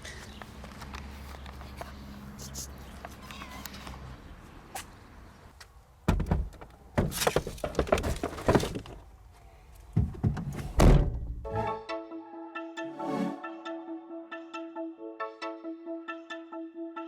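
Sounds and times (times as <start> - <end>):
heavy thuds and knocks: 9.9 - 11.4
music: 11.4 - 17.0.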